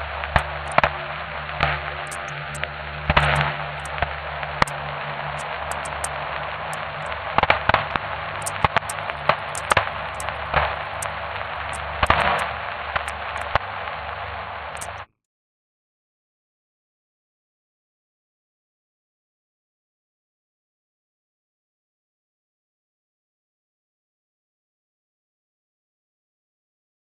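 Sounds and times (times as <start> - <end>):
low hum: 0.0 - 15.0
static hiss: 0.0 - 15.1
sharp clicks and crackling pops: 0.3 - 15.0.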